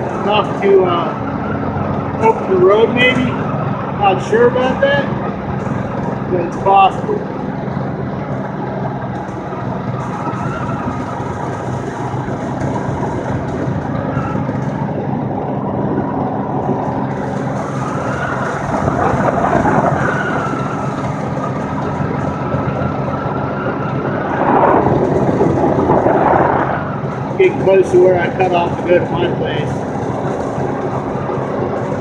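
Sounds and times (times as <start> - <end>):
tyre noise on highway: 0.0 - 32.0
vehicle engine hum: 0.0 - 32.0.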